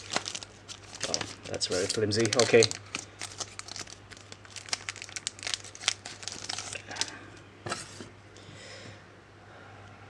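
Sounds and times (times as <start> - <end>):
card pack wrappers crinkling: 0.0 - 7.2.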